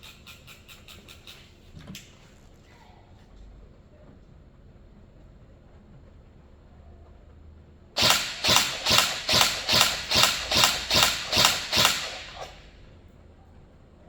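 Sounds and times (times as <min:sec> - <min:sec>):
airsoft rifle single shots: 0:08.0 - 0:12.7.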